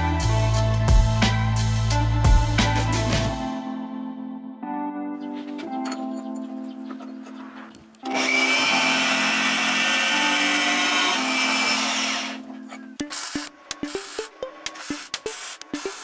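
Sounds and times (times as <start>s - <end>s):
background music: 0.0s - 16.0s
angle grinder cutting metal: 8.0s - 12.4s.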